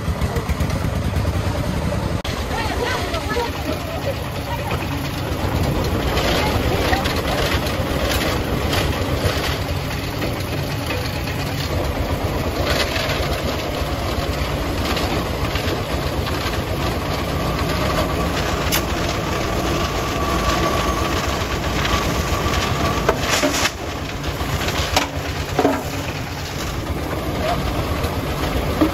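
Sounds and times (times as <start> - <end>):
diesel engine chugging: 0.0 - 28.9
metal clanks: 20.6 - 28.9.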